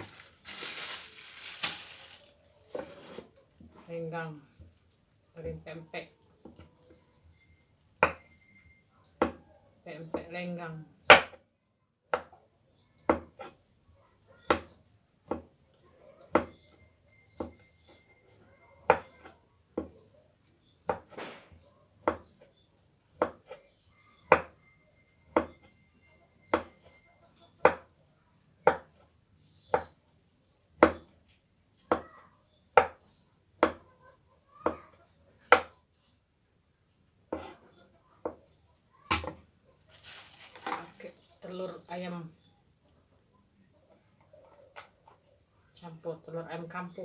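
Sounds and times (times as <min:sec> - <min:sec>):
knife chopping on a cutting board: 0:11.1 - 0:11.4, 0:20.8 - 0:22.4, 0:23.2 - 0:23.6, 0:37.3 - 0:37.6.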